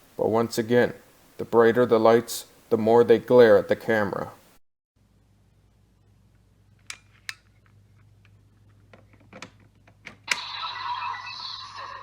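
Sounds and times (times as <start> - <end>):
toy electronic sound effect: 10.3 - 12.0.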